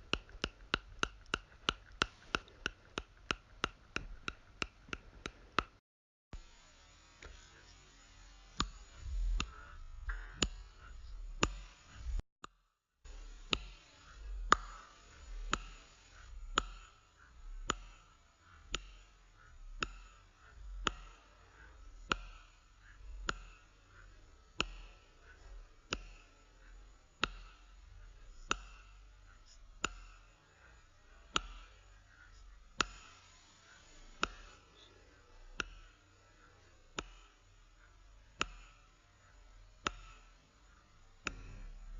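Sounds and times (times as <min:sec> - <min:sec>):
sharp clicks: 0:00.0 - 0:05.8, 0:35.6 - 0:36.0
soft low rumble: 0:08.2 - 0:12.2, 0:13.1 - 0:41.9.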